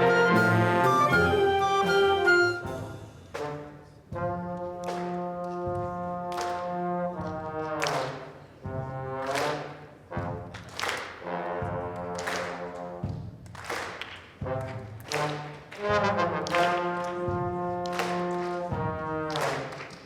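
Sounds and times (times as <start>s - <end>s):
sharp percussion hits: 0.0s - 3.6s
brass band playing held chords: 0.0s - 13.0s, 14.4s - 19.8s.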